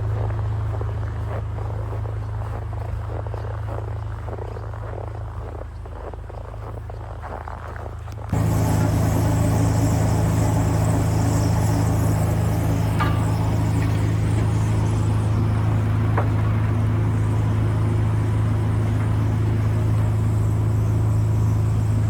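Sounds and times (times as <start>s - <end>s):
small gasoline engine running: 8.3s - 22.0s.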